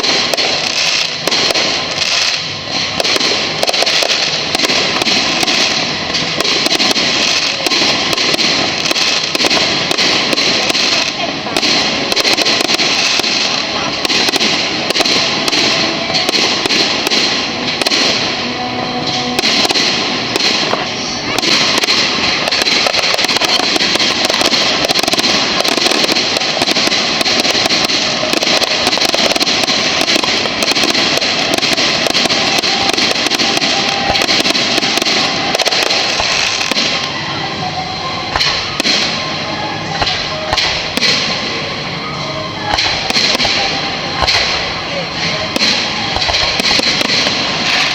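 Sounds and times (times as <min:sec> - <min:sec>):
fireworks crackling and banging: 0:00.0 - 0:47.9
music playing: 0:14.6 - 0:25.8, 0:31.3 - 0:47.9.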